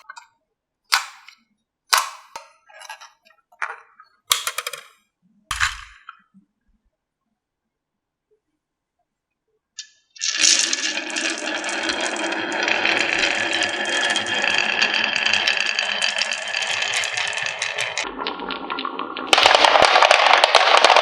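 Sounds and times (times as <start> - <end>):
marbles rattling down wooden run: 4.3 - 4.9, 13.0 - 18.0, 19.3 - 21.0.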